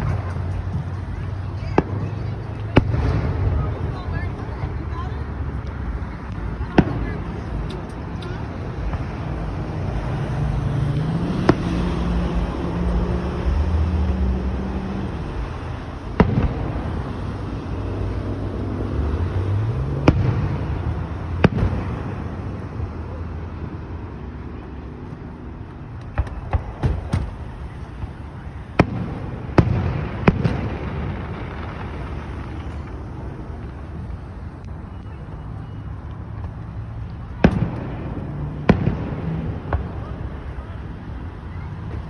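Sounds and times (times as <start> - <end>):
fireworks bangs: 0.0 - 23.2, 26.0 - 42.0.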